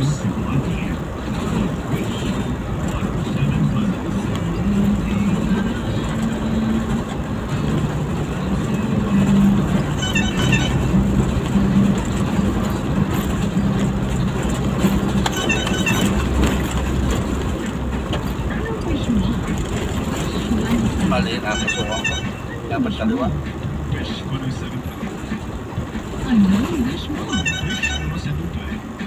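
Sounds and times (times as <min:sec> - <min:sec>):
car radio music: 0:00.0 - 0:29.0
road noise inside moving car: 0:00.0 - 0:29.0.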